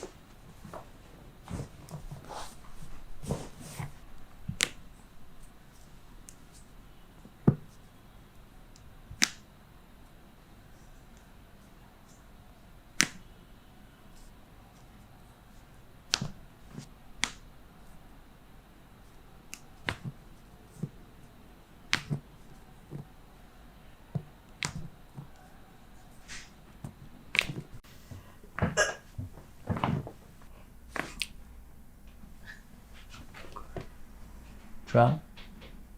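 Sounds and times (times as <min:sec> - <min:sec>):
rustling: 0:00.0 - 0:06.8.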